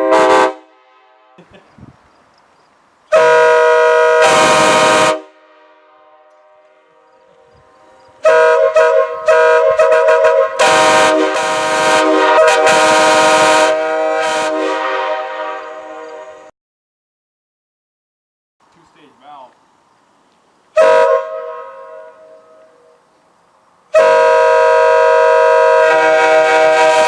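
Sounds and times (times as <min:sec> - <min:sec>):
train air horn: 0:00.0 - 0:01.5, 0:03.1 - 0:16.5, 0:20.8 - 0:23.0, 0:23.9 - 0:27.0.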